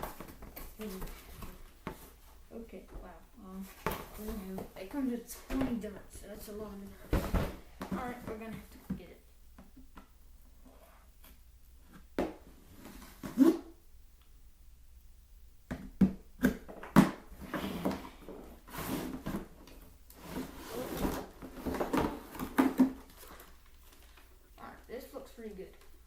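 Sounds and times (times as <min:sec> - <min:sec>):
rustling and scraping of cardboard: 0:00.0 - 0:02.5, 0:17.4 - 0:24.2
knocks and clacks of packaging: 0:20.4 - 0:24.1.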